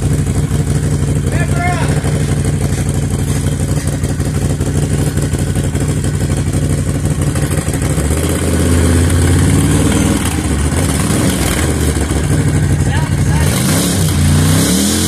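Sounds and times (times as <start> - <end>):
engine revving through exhaust: 0.0 - 15.0.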